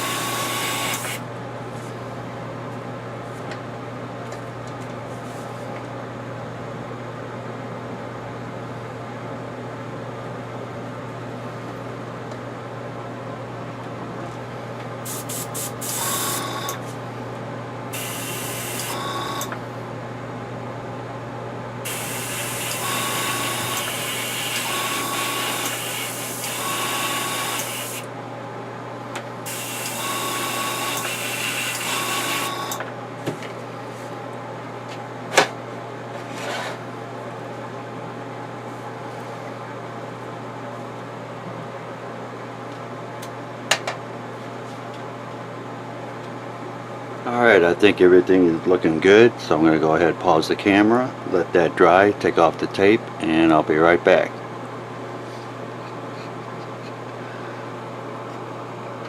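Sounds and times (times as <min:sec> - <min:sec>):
steady low hum: 0:00.0 - 0:26.6
airbrush spraying hiss: 0:15.1 - 0:16.0.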